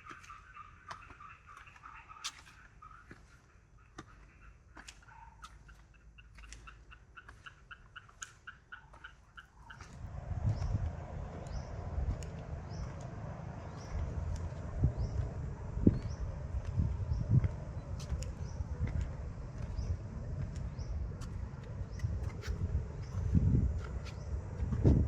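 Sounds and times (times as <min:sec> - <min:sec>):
low rumble: 0:09.8 - 0:25.0.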